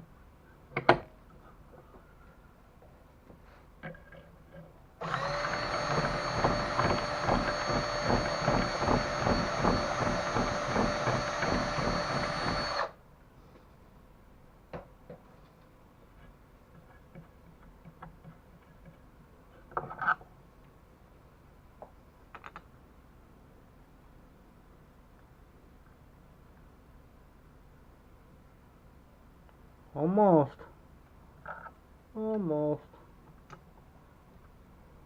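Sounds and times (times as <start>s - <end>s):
handheld power tool running: 5.0s - 13.0s.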